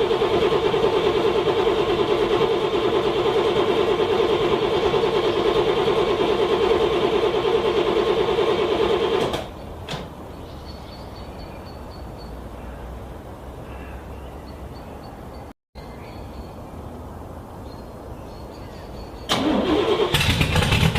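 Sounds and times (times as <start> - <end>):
car starter cranking engine: 0.0 - 9.5, 19.3 - 20.9.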